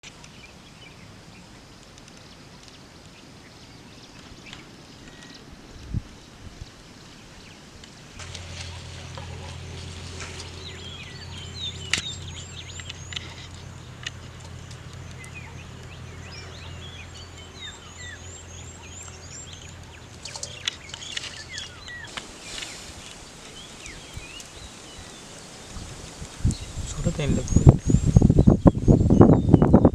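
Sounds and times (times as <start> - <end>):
low steady hum: 4.7 - 26.0
birds chirping and calling: 8.2 - 29.9.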